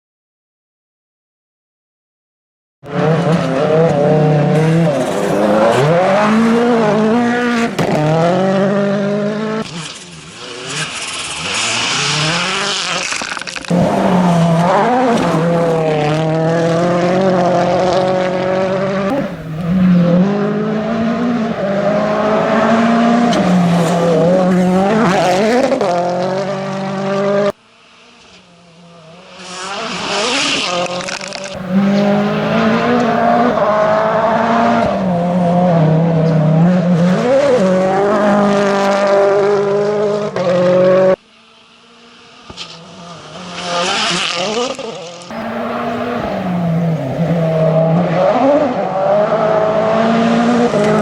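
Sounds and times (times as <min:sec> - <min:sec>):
rally car engine revving: 0:02.8 - 0:41.2, 0:41.8 - 0:51.0
approaching car engine: 0:02.9 - 0:27.5, 0:29.3 - 0:39.6, 0:45.3 - 0:51.0
tyre noise: 0:19.1 - 0:20.5, 0:31.1 - 0:34.9, 0:45.3 - 0:47.9.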